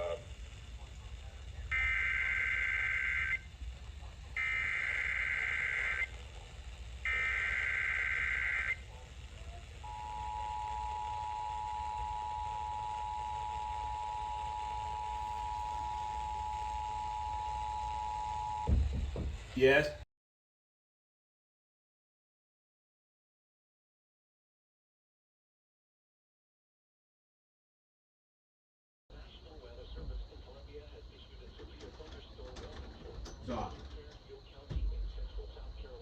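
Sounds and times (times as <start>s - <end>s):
buzzy header data tones: 0.0s - 18.7s
two-tone attention signal: 9.9s - 18.7s.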